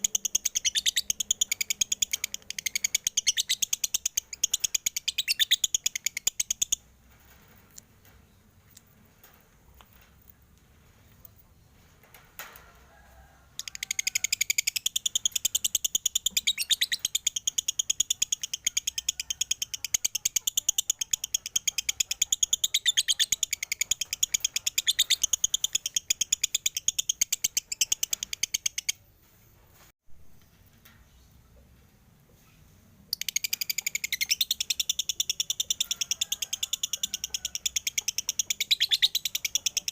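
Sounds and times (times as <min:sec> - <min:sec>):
lovebird chattering: 0:00.0 - 0:06.8, 0:13.6 - 0:29.0, 0:33.1 - 0:39.9.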